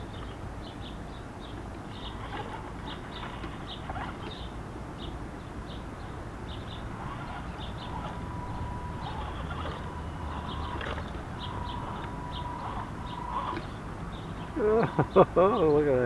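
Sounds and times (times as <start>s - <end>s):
small birds chirping: 0.0s - 16.0s
electric motor whining: 6.6s - 15.2s.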